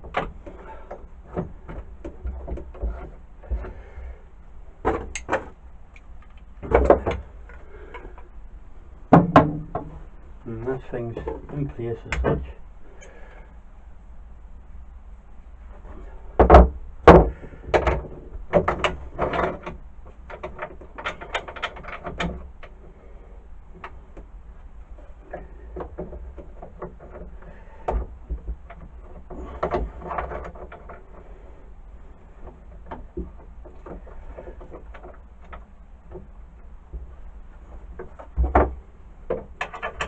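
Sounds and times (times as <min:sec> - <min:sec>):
knocks on wooden workpiece: 0:09.1 - 0:09.9.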